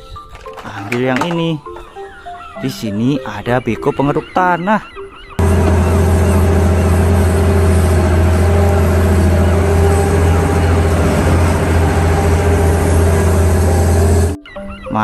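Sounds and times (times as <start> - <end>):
excavator diesel engine running: 5.4 - 14.4.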